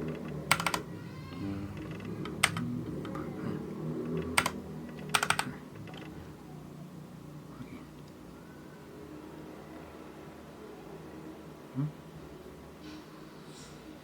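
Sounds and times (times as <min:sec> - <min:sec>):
mechanical keyboard keystrokes: 0:00.1 - 0:00.8, 0:01.8 - 0:03.2, 0:04.1 - 0:06.1.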